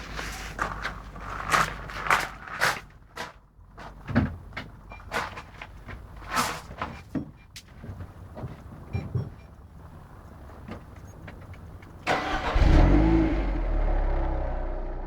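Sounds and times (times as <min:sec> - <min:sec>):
knocks and clatters: 0:03.8 - 0:09.6.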